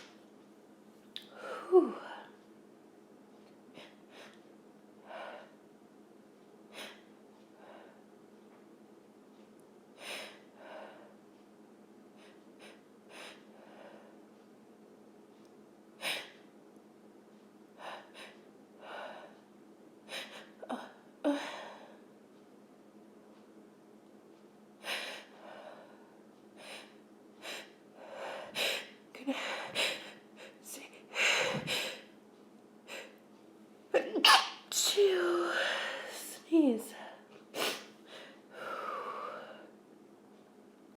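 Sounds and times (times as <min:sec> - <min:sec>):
woman sneezing: 0:34.0 - 0:35.6.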